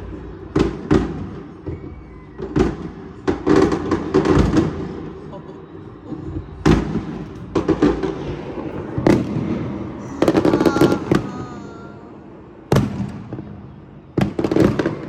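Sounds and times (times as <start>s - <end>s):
crackling firework pops: 0.5s - 5.1s
faint whistling tone: 1.5s - 2.6s, 5.3s - 7.5s
firework bangs: 6.6s - 13.6s, 14.2s - 15.0s.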